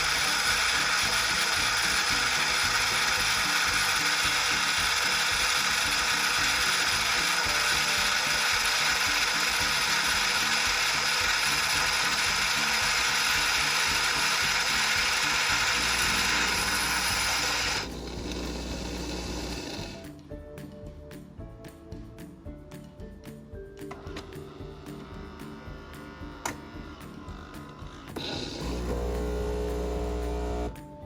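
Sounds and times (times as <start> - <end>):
coffee grinder grinding beans: 0.0 - 20.1, 26.1 - 30.8
low hum: 14.0 - 20.0, 28.4 - 30.8.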